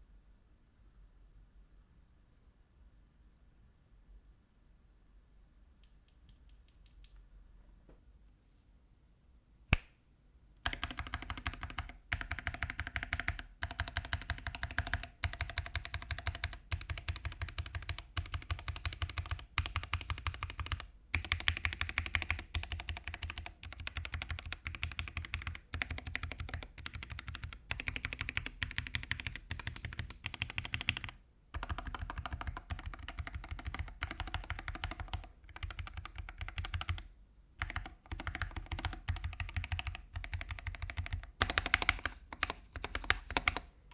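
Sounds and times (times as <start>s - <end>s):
mechanical keyboard typing: 10.6s - 43.7s.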